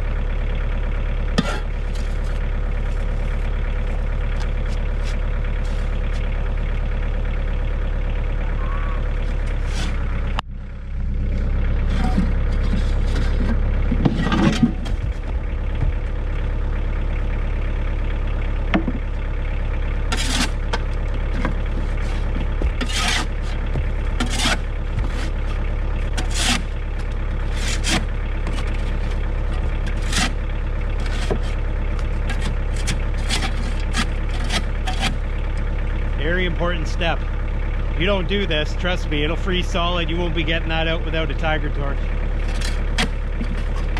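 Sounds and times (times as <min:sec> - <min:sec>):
tractor diesel engine running: 0:00.0 - 0:43.9
scraping or clanking noises: 0:01.3 - 0:02.4, 0:09.5 - 0:10.2, 0:11.8 - 0:16.1, 0:20.1 - 0:30.4, 0:31.0 - 0:31.6, 0:32.2 - 0:35.2, 0:42.4 - 0:43.9.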